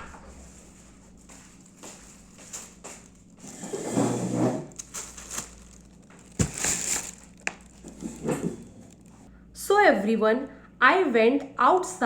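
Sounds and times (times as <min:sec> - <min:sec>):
crinkling rustling handling noise: 0:00.4 - 0:03.8, 0:04.6 - 0:09.3.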